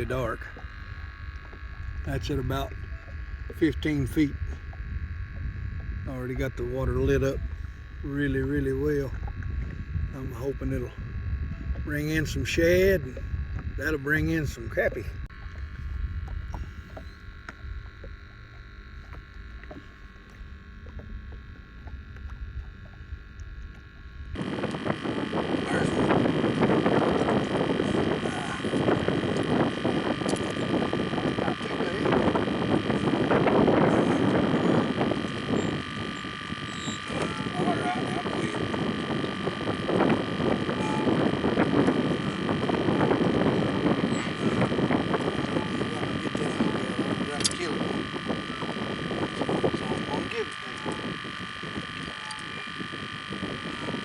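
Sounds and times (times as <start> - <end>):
faint high whine: 0.0 - 54.0
wind buffeting microphone: 0.0 - 54.0
water lapping against boat: 14.5 - 25.0
small clicks: 30.2 - 30.7, 47.3 - 47.8, 51.6 - 52.9.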